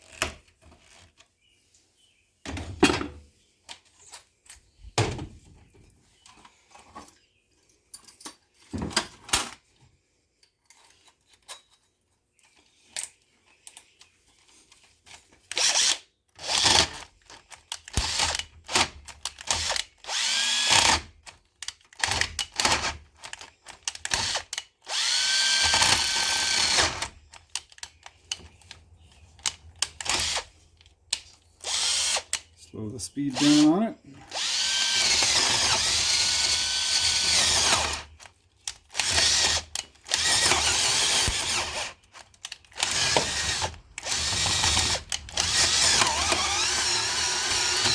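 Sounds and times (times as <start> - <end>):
faint clicks and handling noises: 9.4 - 15.5, 21.2 - 24.7, 27.2 - 31.6, 42.0 - 42.9
power drill whining: 15.5 - 17.0, 18.0 - 18.5, 19.5 - 21.1, 24.0 - 27.2, 30.0 - 30.5, 31.6 - 32.4, 33.3 - 38.1, 38.9 - 42.0, 42.7 - 47.9.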